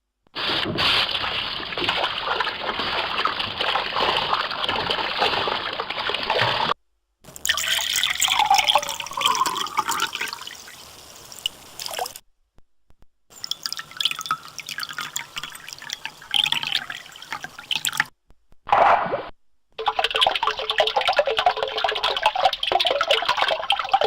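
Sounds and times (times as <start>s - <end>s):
gurgling bubbling water: 0.4s - 6.8s, 7.5s - 10.8s, 13.4s - 18.0s, 19.8s - 24.0s
trickle of running water: 1.0s - 6.8s, 7.4s - 12.2s, 13.3s - 18.1s, 19.8s - 24.0s.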